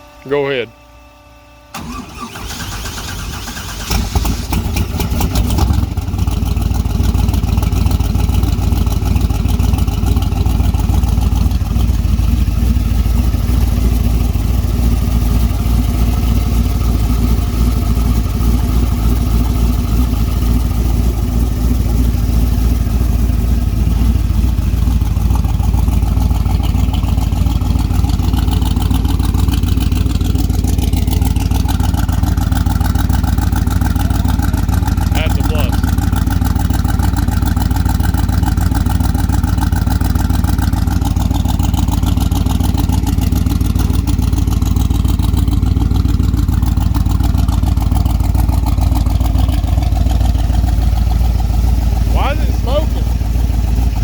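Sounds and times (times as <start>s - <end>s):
engine starter cranking: 1.7s - 7.1s.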